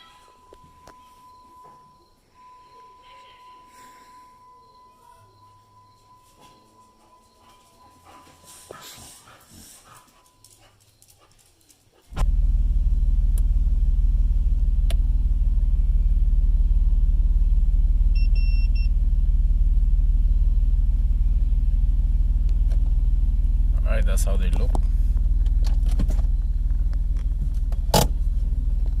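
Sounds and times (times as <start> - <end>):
high beeping: 0.0 - 9.3
engine idling: 12.2 - 29.0.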